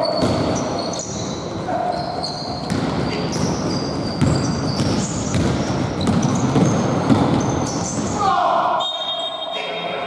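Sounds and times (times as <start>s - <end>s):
basketball bouncing: 0.0s - 0.8s, 2.3s - 8.2s
sneakers squeaking on court: 0.0s - 8.2s.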